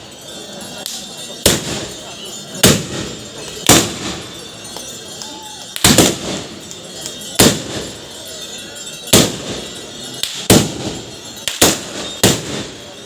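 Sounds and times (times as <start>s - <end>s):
loud gunshots: 3.7s - 4.1s, 5.8s - 6.4s, 9.1s - 9.6s, 10.3s - 12.8s.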